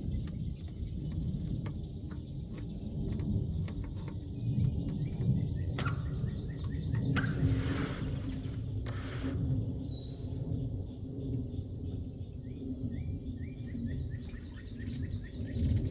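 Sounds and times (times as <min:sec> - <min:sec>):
small birds chirping: 0:00.0 - 0:15.9
steady low rumble: 0:00.0 - 0:15.9.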